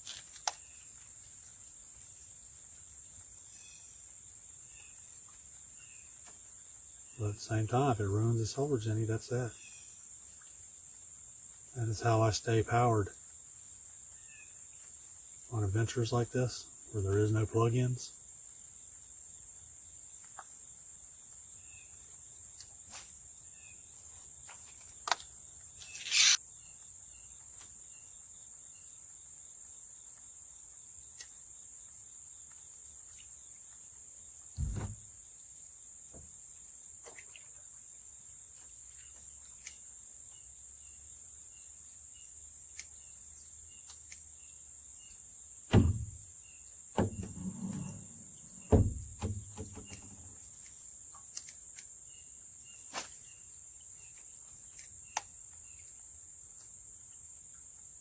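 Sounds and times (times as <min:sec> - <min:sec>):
high-pitched insect chorus: 0:25.8 - 0:26.4
knocks and clicks: 0:45.7 - 0:46.2, 0:47.0 - 0:50.3.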